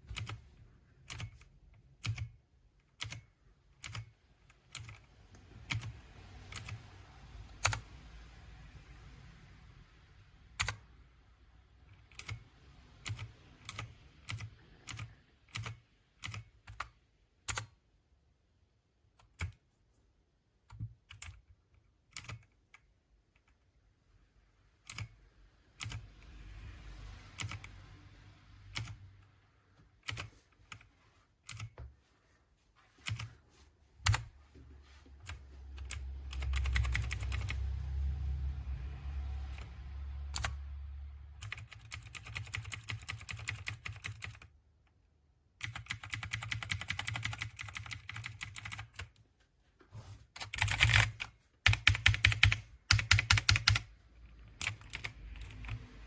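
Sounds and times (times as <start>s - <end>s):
mechanical keyboard keystrokes: 0.0s - 6.9s, 7.5s - 7.9s, 10.6s - 10.9s, 11.9s - 17.8s, 20.7s - 22.8s, 24.8s - 26.3s, 27.3s - 27.7s, 28.7s - 29.0s, 30.0s - 30.9s, 34.0s - 34.3s, 35.2s - 37.6s, 40.3s - 40.6s, 41.4s - 44.5s, 45.6s - 49.2s, 50.4s - 53.9s, 54.5s - 55.9s
low rumble: 35.3s - 41.4s.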